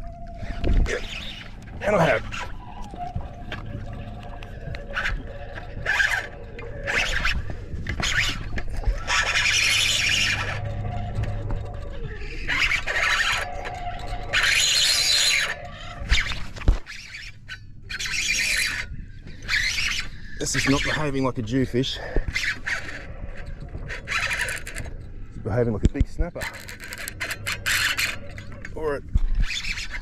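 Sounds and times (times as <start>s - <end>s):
fishing reel drag screeching: 9.0s - 10.8s, 12.3s - 21.0s, 22.3s - 25.0s, 26.4s - 28.5s, 29.3s - 30.0s.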